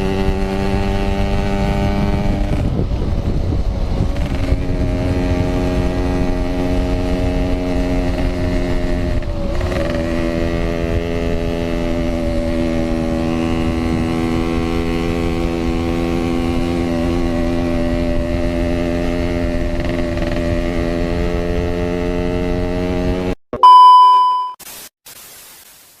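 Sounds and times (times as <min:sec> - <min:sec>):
two-stroke motorcycle engine running: 0:00.0 - 0:23.4
loud electronic beep: 0:23.6 - 0:24.6.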